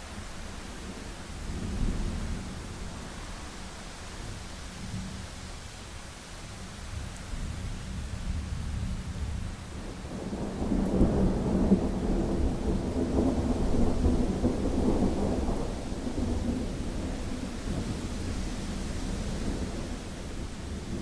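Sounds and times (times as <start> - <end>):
steady rain: 0.0 - 21.0
thunder rolling: 10.1 - 21.0.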